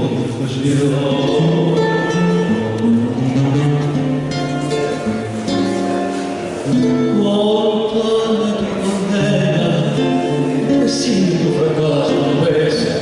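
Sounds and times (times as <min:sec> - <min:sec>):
man singing: 0:00.0 - 0:03.2, 0:06.6 - 0:13.0
guitar accompaniment: 0:00.0 - 0:13.0.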